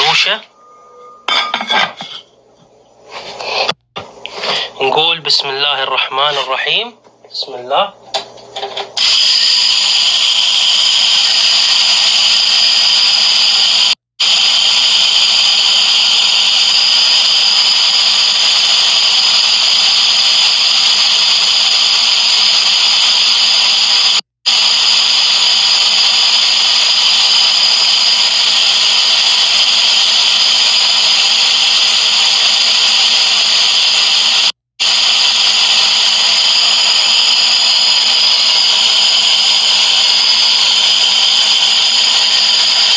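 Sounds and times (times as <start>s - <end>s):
electric grain grinder whine: 9.0s - 42.9s.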